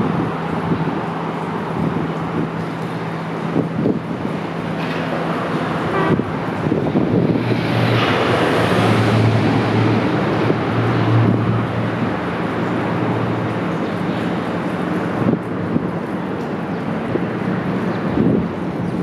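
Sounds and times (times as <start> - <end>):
river water rushing: 0.0 - 19.0.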